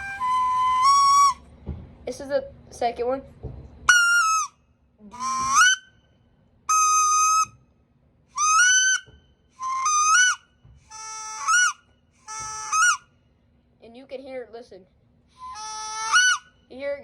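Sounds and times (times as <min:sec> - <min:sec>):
squeaky duck call whistles: 0:00.0 - 0:01.4, 0:03.9 - 0:04.5, 0:05.2 - 0:06.0, 0:06.7 - 0:07.5, 0:08.4 - 0:13.0, 0:15.4 - 0:16.6.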